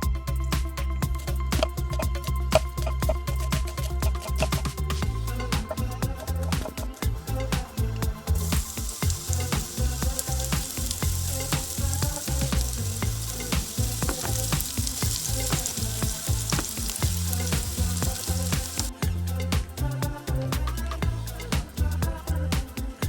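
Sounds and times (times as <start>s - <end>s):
music with steady bass beat: 0.0s - 23.0s
food sizzling in a pan: 7.4s - 19.0s.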